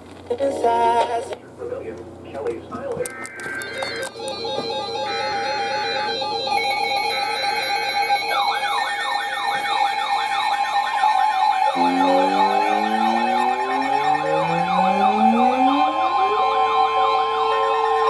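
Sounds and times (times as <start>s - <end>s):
repeating siren wail: 3.3s - 18.0s
steady electronic alert tone: 3.3s - 18.0s
low rising siren sweep: 4.8s - 18.0s.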